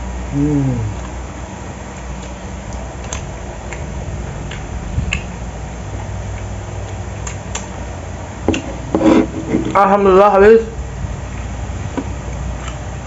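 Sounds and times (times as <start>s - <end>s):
steady low hum: 0.0s - 13.0s
light eating clicks: 6.3s - 7.8s.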